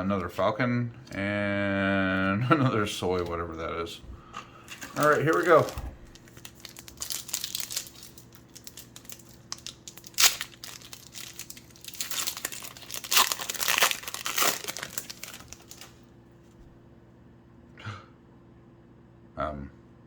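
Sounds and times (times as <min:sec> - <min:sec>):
wrapper crackling: 0:04.6 - 0:16.0
wrapper ripping: 0:04.7 - 0:16.0.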